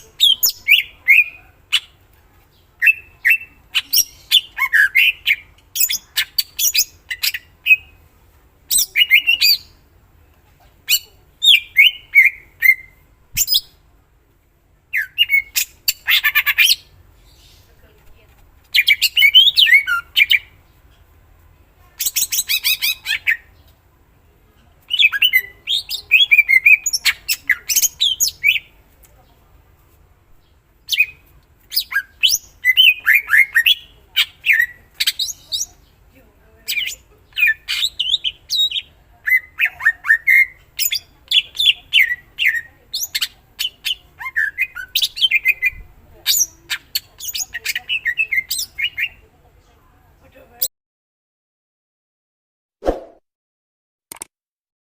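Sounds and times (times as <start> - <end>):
bird singing chattering and whistles: 0.0 - 2.0, 2.8 - 8.0, 8.7 - 9.8, 10.9 - 13.8, 14.9 - 17.7, 18.7 - 20.6, 22.0 - 23.6, 24.9 - 28.7, 30.8 - 35.8, 36.7 - 49.2.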